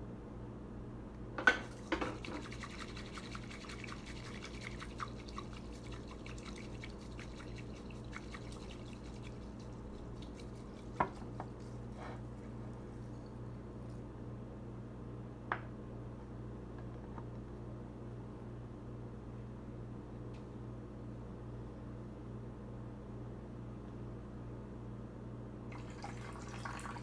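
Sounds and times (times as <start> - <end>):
water pouring and dripping: 1.7 - 10.6, 25.7 - 27.0.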